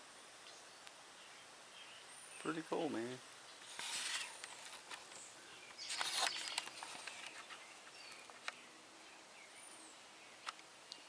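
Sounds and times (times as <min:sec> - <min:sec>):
brief rustle: 0:03.6 - 0:08.6
high bird chirps: 0:05.1 - 0:11.0.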